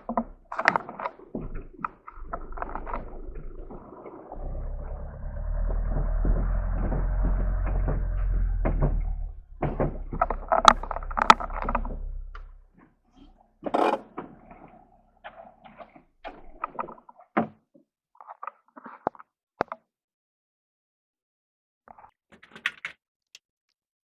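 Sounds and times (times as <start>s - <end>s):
irregular clatter: 0.0s - 17.5s
sharp knocks and clicks: 0.0s - 17.5s.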